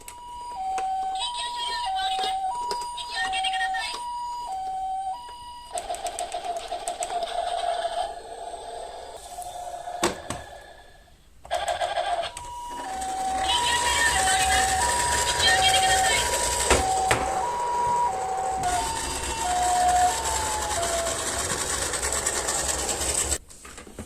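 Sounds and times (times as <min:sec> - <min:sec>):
hi-lo ambulance siren: 0:00.0 - 0:08.2, 0:11.5 - 0:23.4
buzzy pulsing siren tone: 0:12.3 - 0:23.1.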